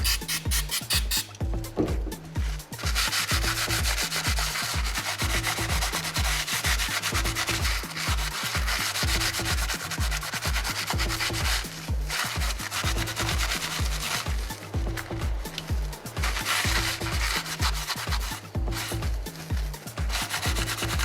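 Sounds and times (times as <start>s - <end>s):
scratchy rubbing noise: 0.0s - 1.4s, 2.3s - 21.0s
electronic dance music: 0.0s - 21.0s.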